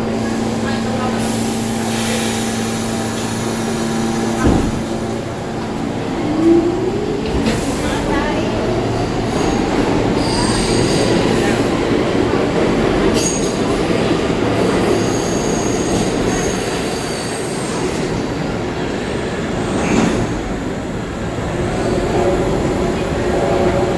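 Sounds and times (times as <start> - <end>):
subway train wheel rumble: 0.0 - 23.9.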